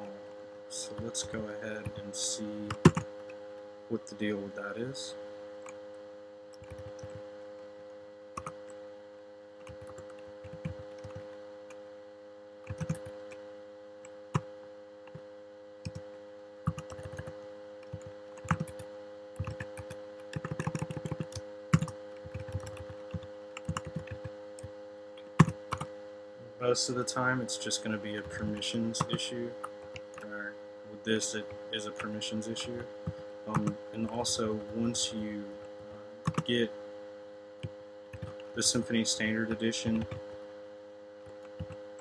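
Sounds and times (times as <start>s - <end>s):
steady electrical hum: 0.0s - 42.0s
keyboard typing: 2.6s - 3.1s, 6.6s - 7.2s, 8.4s - 8.6s, 9.6s - 11.4s, 12.7s - 13.4s, 15.8s - 16.0s, 16.6s - 25.9s, 28.2s - 30.3s, 33.0s - 33.8s, 36.2s - 36.5s, 38.1s - 38.6s, 41.2s - 41.8s.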